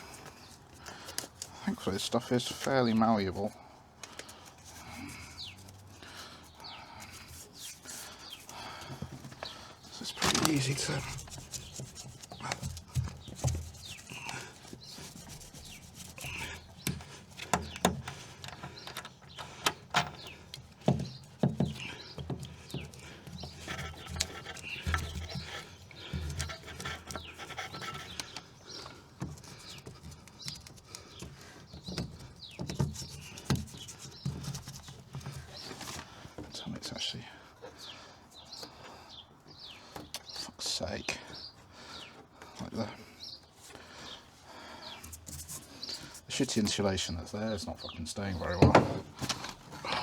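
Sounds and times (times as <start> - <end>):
hands rubbing crinkling sheet: 4.2 - 17.4
sharp little knocks and taps: 7.0 - 36.8.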